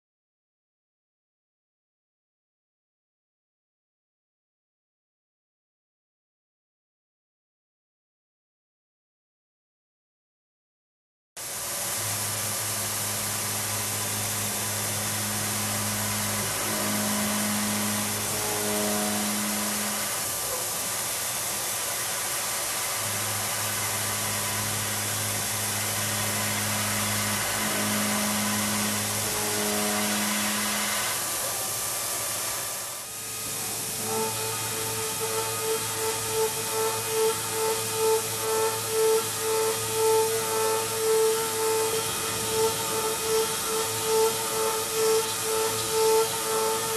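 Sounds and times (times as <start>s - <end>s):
milling machine cutting metal: 11.4s - 46.9s.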